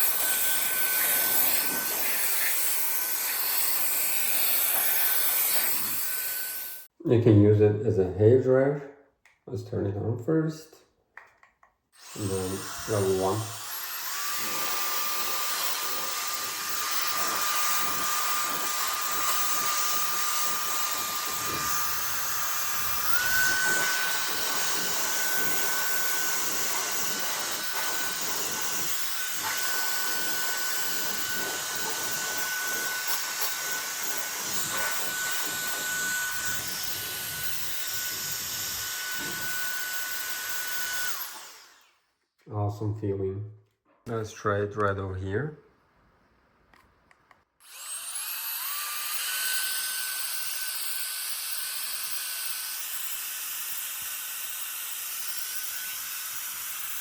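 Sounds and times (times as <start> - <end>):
air duster fan whine: 0.0 - 6.9, 12.0 - 41.8.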